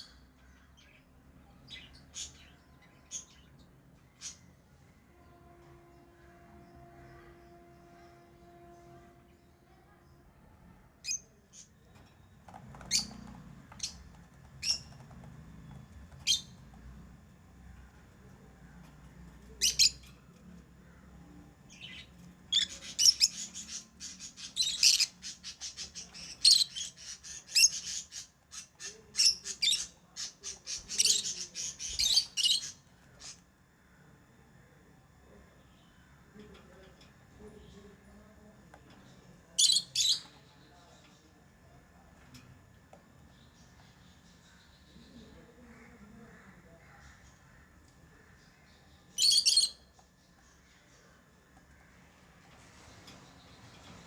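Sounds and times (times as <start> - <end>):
lovebirds chirping: 11.0 - 16.9.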